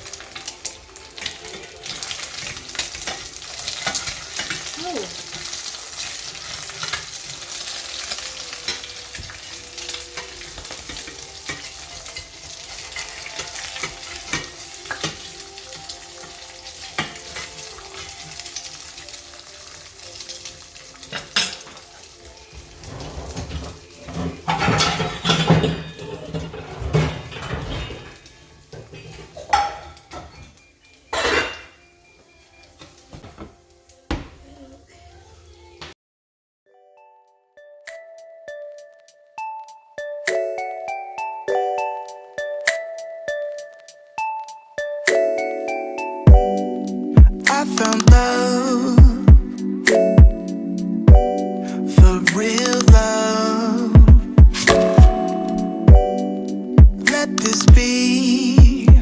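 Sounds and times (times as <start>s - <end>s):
food sizzling in a frying pan: 0.0s - 26.4s, 27.3s - 36.0s
pans and utensils clattering: 0.0s - 32.0s, 32.7s - 33.6s
utensil stirring and scraping: 22.5s - 25.0s.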